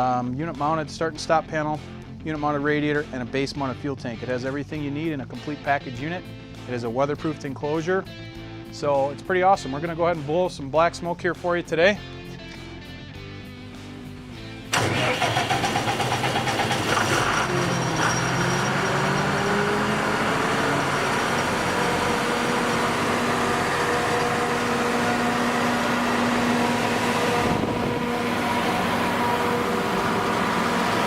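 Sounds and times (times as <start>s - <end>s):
diesel engine starting and running: 13.5s - 31.0s.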